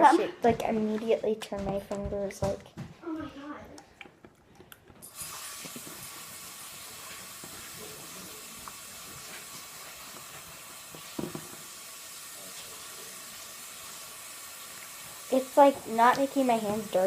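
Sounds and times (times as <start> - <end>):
hands washing under water: 5.0 - 17.0
tap water running into sink: 5.0 - 17.0.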